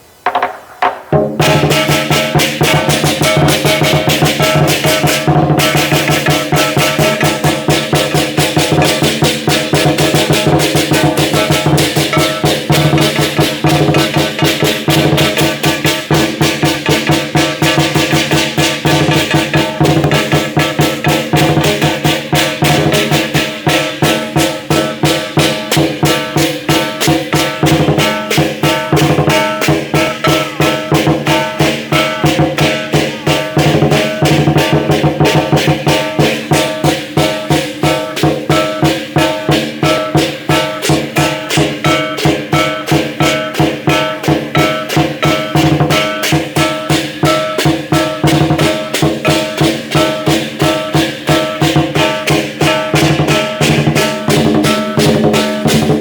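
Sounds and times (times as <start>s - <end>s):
large drum beating: 0.2s - 56.0s
cymbals ringing: 1.1s - 56.0s.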